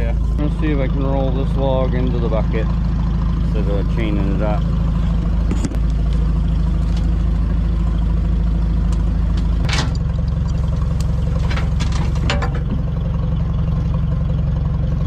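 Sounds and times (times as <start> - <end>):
tractor engine running: 0.0 - 15.0
knocks and clanks: 9.3 - 13.1.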